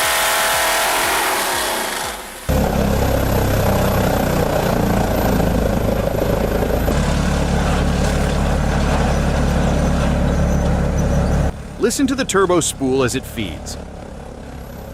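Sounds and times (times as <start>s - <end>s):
large engine drone: 0.0s - 14.9s.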